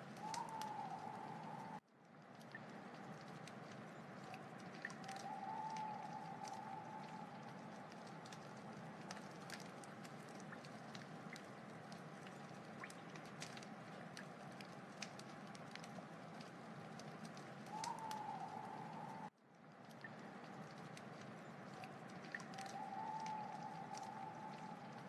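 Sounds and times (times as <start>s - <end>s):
wood fire crackling: 0.0s - 25.0s
thin steady whistle: 17.7s - 19.3s, 22.6s - 25.0s.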